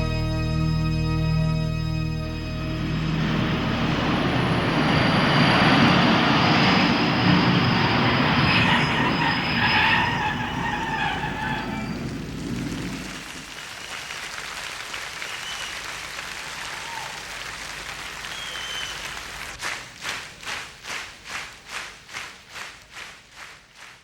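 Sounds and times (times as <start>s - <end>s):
audience applauding: 11.8s - 24.0s
audience clapping in rhythm: 12.7s - 24.0s.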